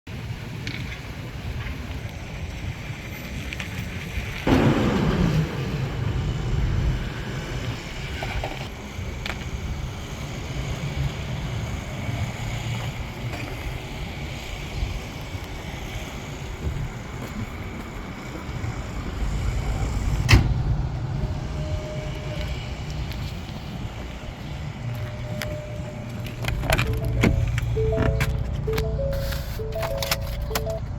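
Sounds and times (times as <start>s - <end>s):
sharp knock: 4.5s - 7.5s
diesel engine rumbling: 4.5s - 8.9s, 9.6s - 30.9s.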